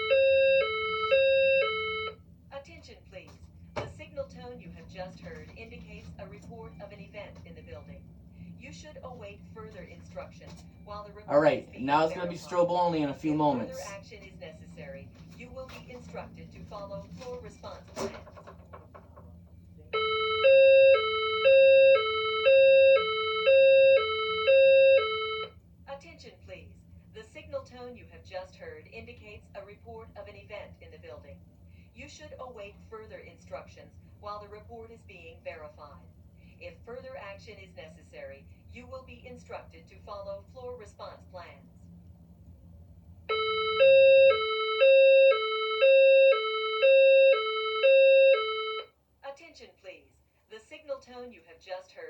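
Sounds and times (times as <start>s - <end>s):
two-tone hi-lo alarm signal: 0.0s - 2.2s, 20.0s - 25.5s, 43.3s - 48.9s.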